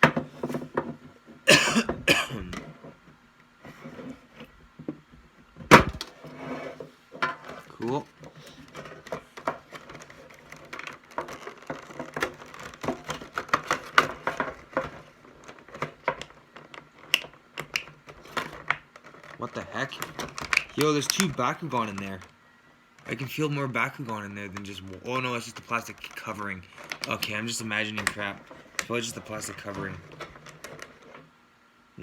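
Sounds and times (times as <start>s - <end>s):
plastic packaging rustling: 5.8s - 22.4s, 23.0s - 31.3s.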